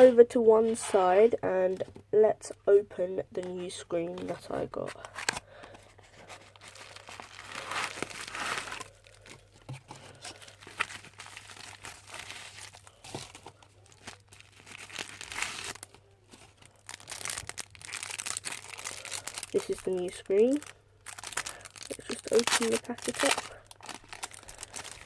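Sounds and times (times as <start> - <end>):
packaging crinkling and tearing: 5.0 - 25.0.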